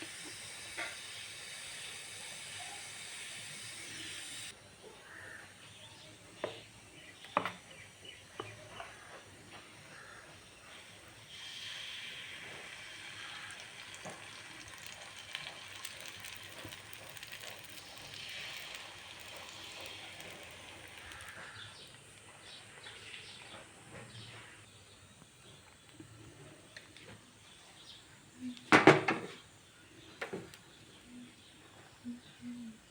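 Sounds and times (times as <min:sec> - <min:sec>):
food sizzling in hot oil: 0:00.0 - 0:04.5, 0:10.6 - 0:21.6.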